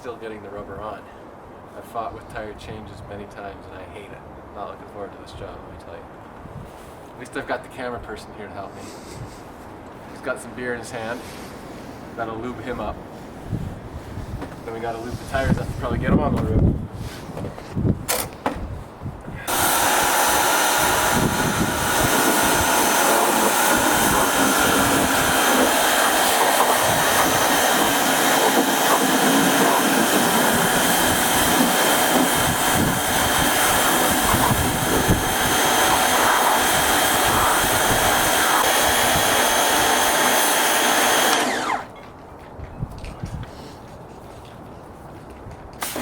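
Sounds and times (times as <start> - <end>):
pressure washer spraying: 19.5 - 41.8, 45.8 - 46.0.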